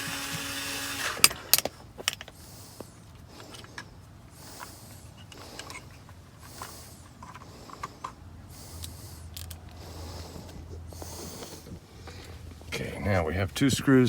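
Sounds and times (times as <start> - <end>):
screws clicking and creaking: 0.0 - 2.4, 4.6 - 9.8.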